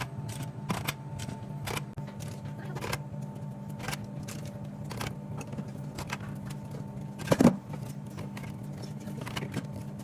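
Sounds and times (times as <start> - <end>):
vending machine hum: 0.0 - 10.0.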